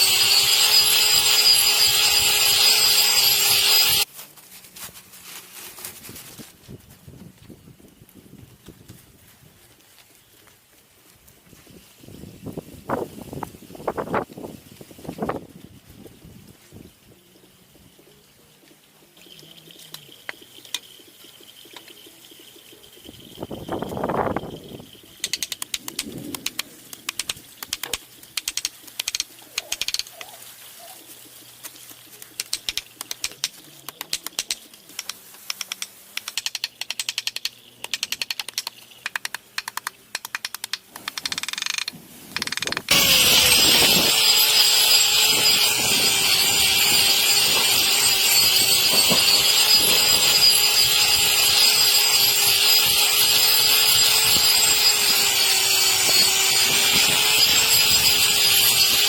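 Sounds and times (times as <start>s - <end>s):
electric power tool running: 0.0s - 4.1s, 42.9s - 59.0s
sharp clicks and scrapes: 25.1s - 30.4s, 31.4s - 59.0s.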